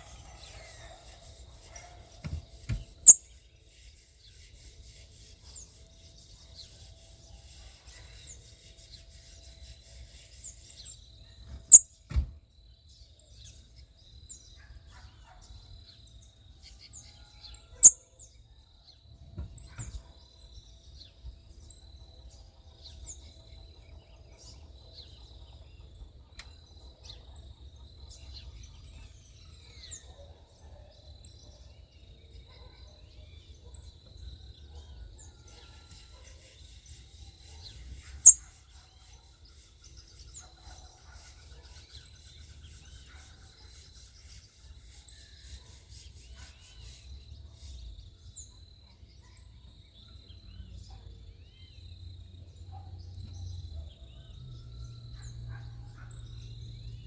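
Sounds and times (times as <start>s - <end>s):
birds chirping: 0.0s - 12.3s, 19.4s - 45.0s.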